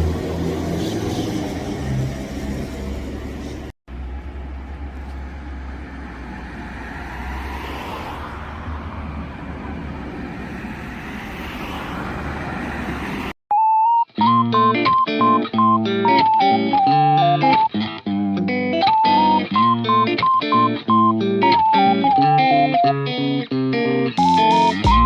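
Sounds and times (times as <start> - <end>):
road traffic rumble: 0.0 - 13.4
short beep-like tone: 13.5 - 17.7, 18.9 - 23.0
electric guitar music: 14.1 - 25.0.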